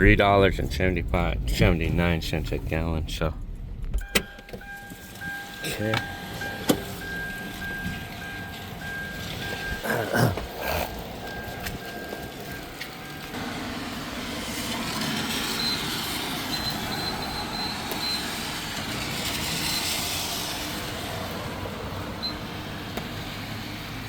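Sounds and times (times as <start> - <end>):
rain: 7.0 - 24.0
tyres hissing on wet pavement: 12.8 - 24.0.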